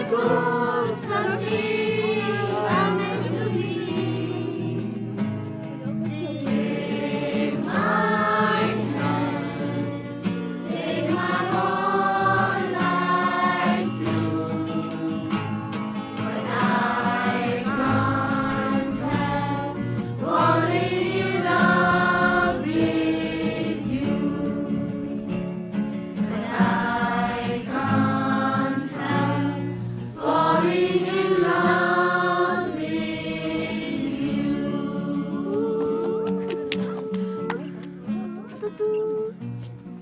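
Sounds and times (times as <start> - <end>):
slow song with choir harmony: 0.0 - 36.2.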